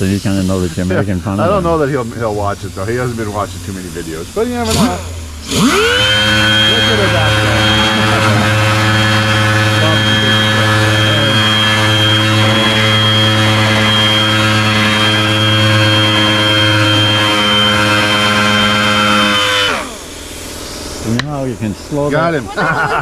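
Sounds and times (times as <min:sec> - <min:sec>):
pneumatic sander whirring: 0:00.0 - 0:21.4.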